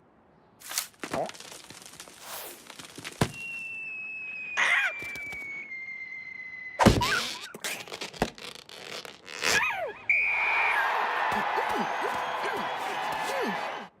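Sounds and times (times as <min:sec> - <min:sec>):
descending slide whistle: 0:03.4 - 0:07.6.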